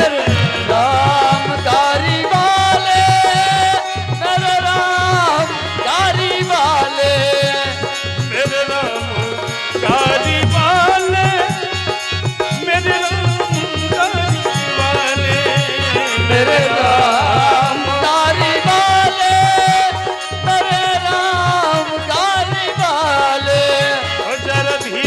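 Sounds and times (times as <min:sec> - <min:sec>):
person singing: 0:00.0 - 0:25.0
hand drum beat: 0:09.0 - 0:11.8.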